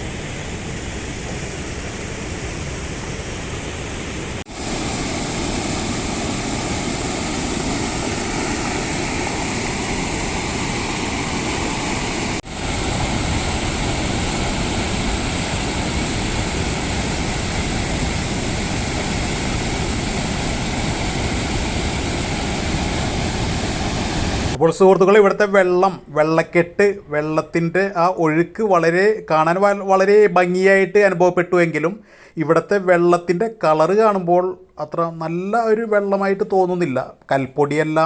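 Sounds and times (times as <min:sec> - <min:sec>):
waterfall rushing: 0:00.0 - 0:24.6.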